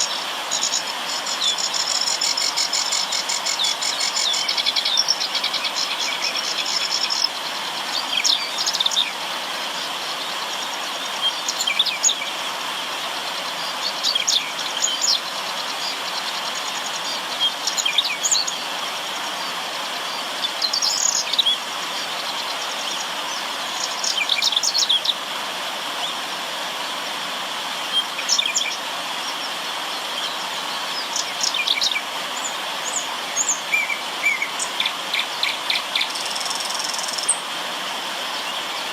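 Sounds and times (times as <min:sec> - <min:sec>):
river water rushing: 0:00.0 - 0:38.9
small birds chirping: 0:13.3 - 0:25.2, 0:27.9 - 0:38.9.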